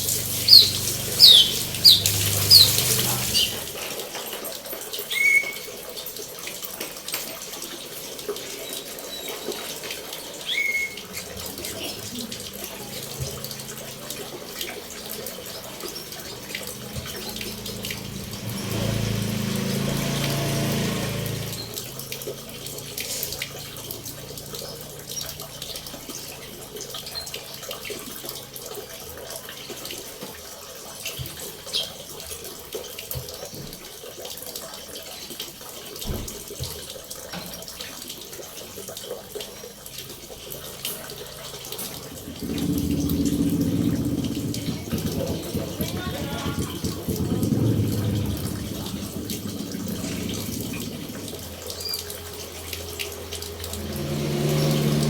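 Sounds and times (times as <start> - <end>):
running water: 0.0 - 55.0
low-pitched sound: 42.0 - 55.0.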